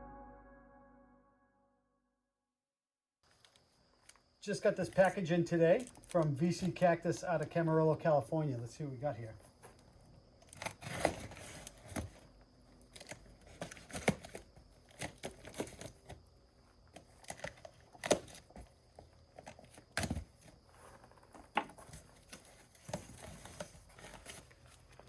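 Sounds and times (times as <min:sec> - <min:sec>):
packing material crinkling: 0:04.8 - 0:06.8.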